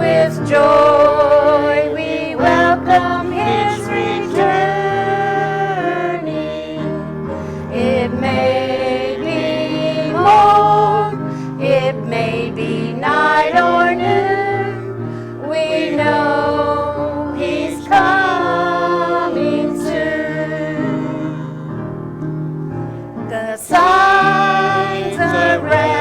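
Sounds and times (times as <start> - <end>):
instrumental accompaniment: 0.0 - 26.0
person singing a hymn: 0.0 - 26.0.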